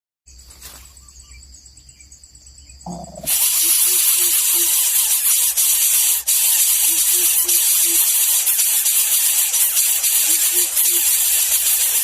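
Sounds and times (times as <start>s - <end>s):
faint chirps: 0.3s - 5.2s
bird chick hissing: 2.9s - 12.0s.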